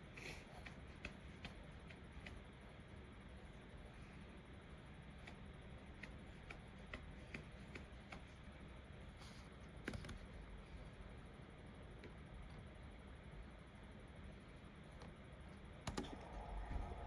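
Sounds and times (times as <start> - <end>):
keyboard keys clicking: 15.8 - 16.2.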